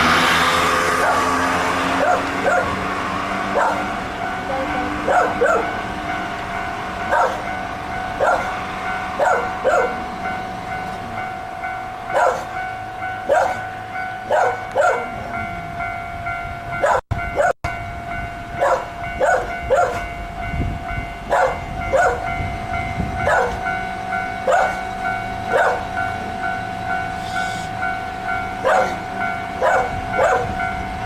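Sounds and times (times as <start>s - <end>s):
electric train rumbling: 0.0s - 31.0s
dog barking: 1.0s - 2.8s, 3.5s - 3.9s, 4.5s - 5.8s, 7.1s - 7.5s, 8.2s - 8.6s, 9.2s - 10.0s, 12.1s - 12.6s, 13.3s - 13.7s, 14.3s - 15.2s, 16.8s - 17.6s, 18.6s - 20.1s, 21.3s - 22.3s, 23.2s - 23.6s, 24.4s - 24.8s, 25.5s - 25.9s, 28.6s - 30.6s.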